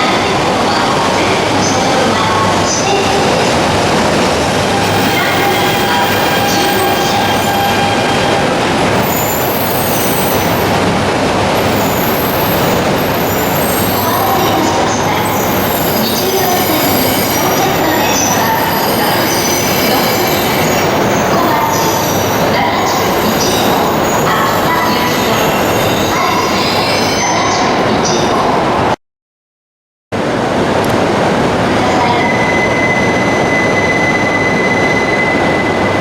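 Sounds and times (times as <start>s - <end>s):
train wheels rumbling on rail: 0.0s - 29.0s
squealing and whining tones: 3.4s - 10.9s, 11.5s - 27.8s.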